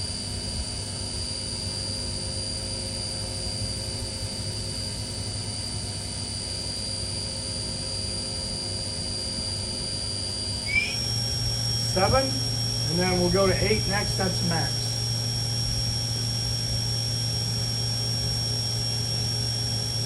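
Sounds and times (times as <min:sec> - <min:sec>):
spindle high-pitched whine: 0:08.3 - 0:20.0
low motor hum: 0:10.7 - 0:20.0.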